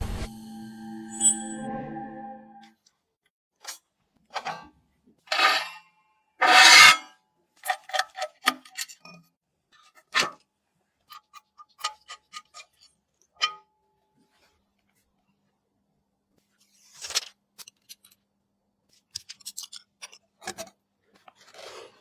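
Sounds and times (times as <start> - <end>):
short ringing tone: 0.2 - 2.6
scraping knock: 5.3 - 5.7, 6.4 - 7.0.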